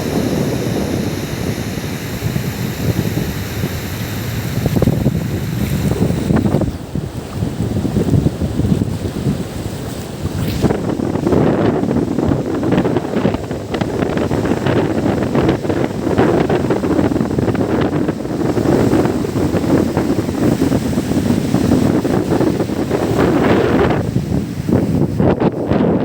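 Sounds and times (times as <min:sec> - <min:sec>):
waves washing: 0:00.0 - 0:26.0
wind buffeting microphone: 0:00.0 - 0:26.0.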